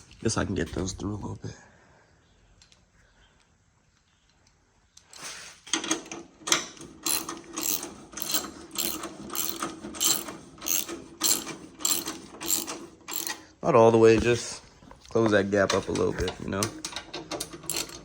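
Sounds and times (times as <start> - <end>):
ratchet wrench clicking: 7.0 - 13.4, 17.4 - 18.0.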